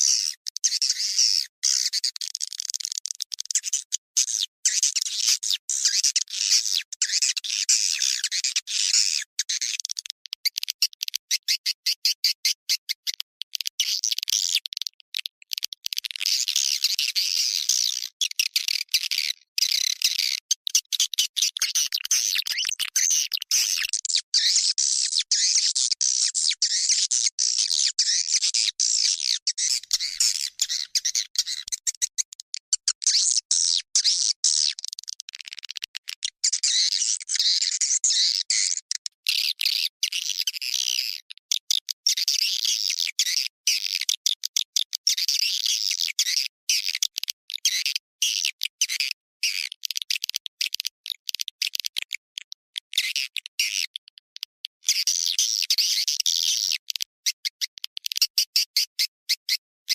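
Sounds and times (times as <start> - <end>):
high-pitched bird chirps: 16.3 - 35.1, 36.2 - 40.6.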